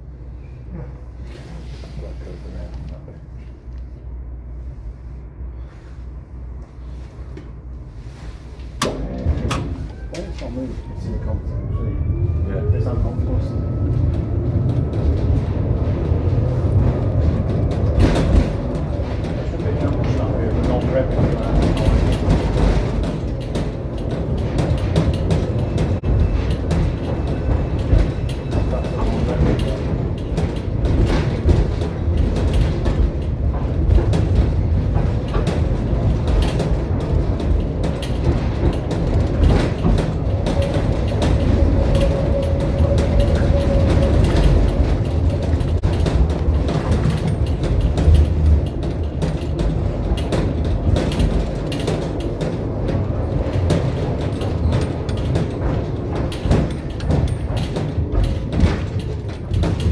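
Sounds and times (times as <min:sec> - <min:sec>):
tram rumbling on track: 0:00.0 - 0:59.9
wheels knocking and clicking: 0:13.7 - 0:59.9
body and fittings rattling: 0:14.6 - 0:59.9.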